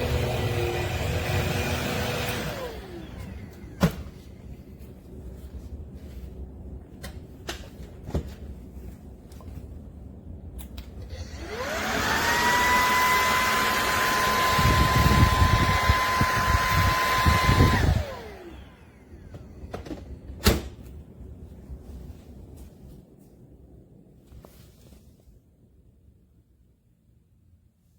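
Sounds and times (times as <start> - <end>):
stick vacuum motor whining: 0.0 - 4.0, 11.0 - 20.0.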